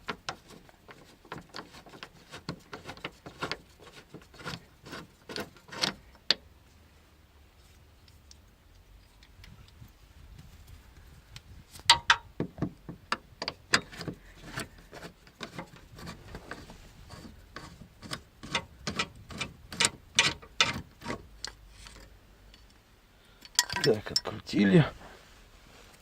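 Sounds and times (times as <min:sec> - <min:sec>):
wrench clicking on bolt: 0:17.6 - 0:21.6.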